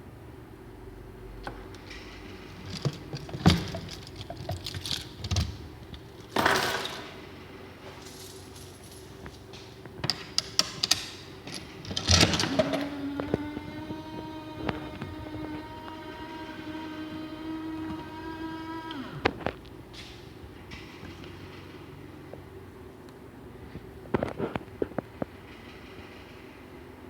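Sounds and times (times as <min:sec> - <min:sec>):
metallic clinks and rattles: 0:01.9 - 0:07.3, 0:07.9 - 0:09.5.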